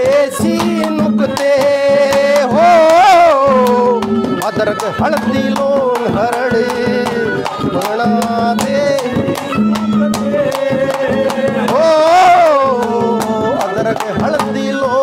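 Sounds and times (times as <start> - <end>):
quick steady drum strokes: 0.0 - 15.0
sustained melodic notes: 0.7 - 15.0.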